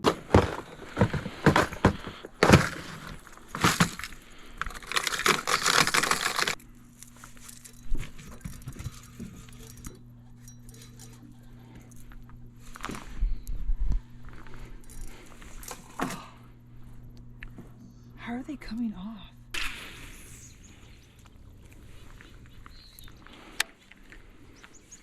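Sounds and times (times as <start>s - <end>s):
steady low hum: 0.0s - 25.0s
fishing tackle clicking and jingling: 7.4s - 12.2s, 14.8s - 15.9s.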